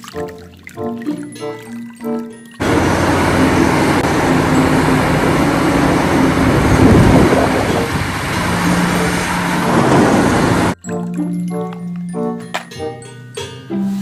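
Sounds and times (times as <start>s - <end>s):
low engine hum: 2.6s - 10.8s
road vehicles in traffic: 2.6s - 10.8s.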